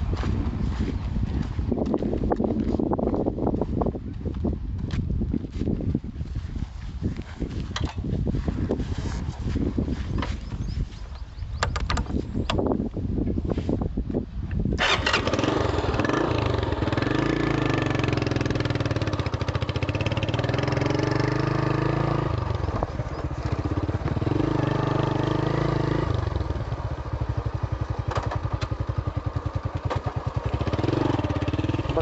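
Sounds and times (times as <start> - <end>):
motorcycle engine running: 0.0 - 12.7, 14.8 - 32.0.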